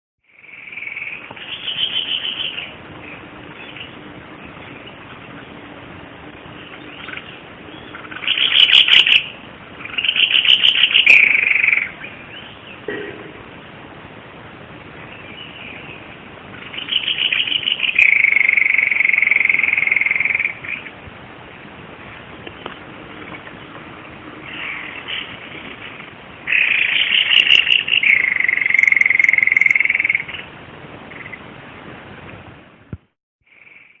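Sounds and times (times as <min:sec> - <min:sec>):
steady background hiss: 0:00.2 - 0:34.0
bird chattering song: 0:00.4 - 0:05.6, 0:06.6 - 0:13.2, 0:15.1 - 0:20.9, 0:24.5 - 0:30.5.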